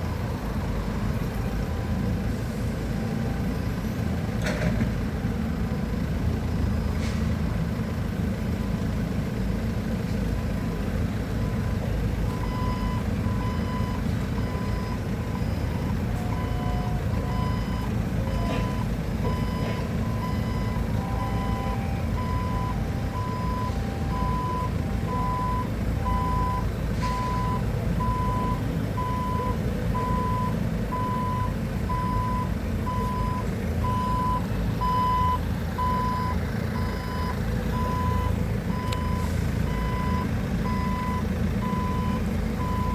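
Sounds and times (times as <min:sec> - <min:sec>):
diesel engine running: 0:00.0 - 0:42.9
reversing alarm beeping: 0:11.4 - 0:42.9.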